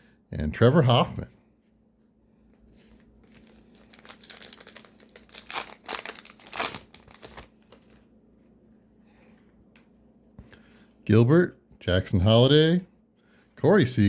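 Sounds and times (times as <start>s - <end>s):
plastic wrapper tearing and crinkling: 3.3s - 8.0s.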